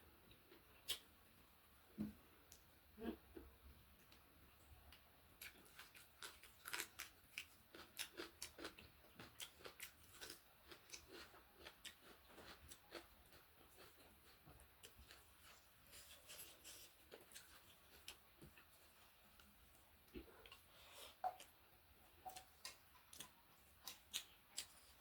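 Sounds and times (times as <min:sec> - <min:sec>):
chewing crisp food: 0:04.9 - 0:19.5, 0:20.1 - 0:25.0.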